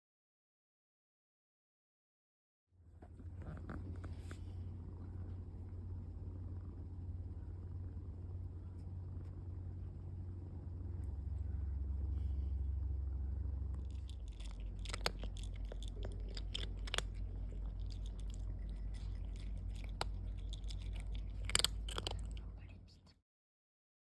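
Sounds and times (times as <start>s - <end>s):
low steady hum: 2.8s - 23.2s
cat chewing food: 13.8s - 23.2s.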